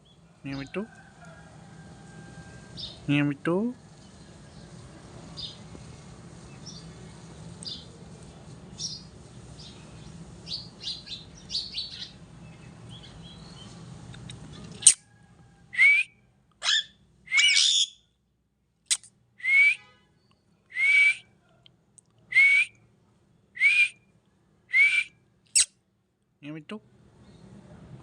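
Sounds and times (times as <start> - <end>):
loud pitch-bending whistles: 15.8 - 18.0, 19.4 - 19.8, 20.8 - 21.2, 22.3 - 22.7, 23.6 - 24.0, 24.7 - 25.7
parrot chirping: 16.6 - 18.0.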